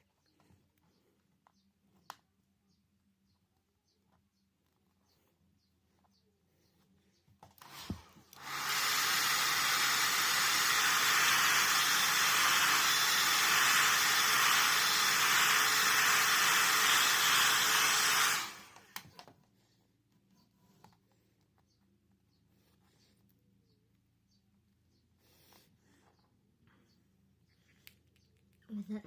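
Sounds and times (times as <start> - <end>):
heat gun blowing: 7.6 - 19.1.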